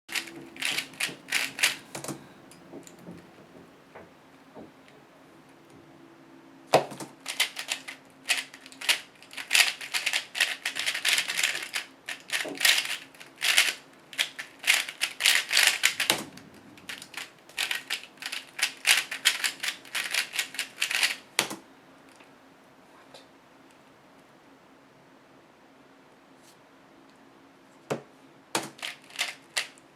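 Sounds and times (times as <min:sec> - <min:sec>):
puzzle cube clicking: 0:00.1 - 0:02.2.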